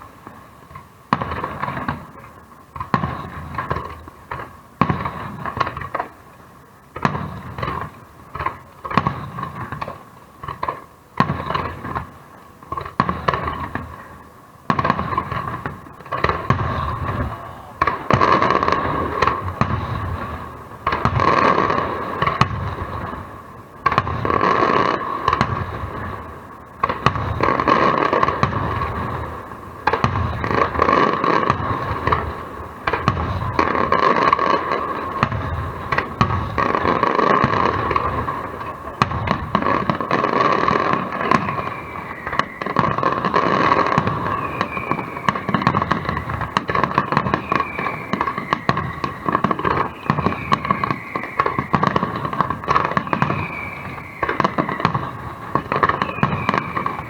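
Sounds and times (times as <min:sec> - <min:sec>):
fireworks bangs and crackling: 0:00.0 - 0:57.0
falling firework whistles: 0:14.7 - 0:57.0.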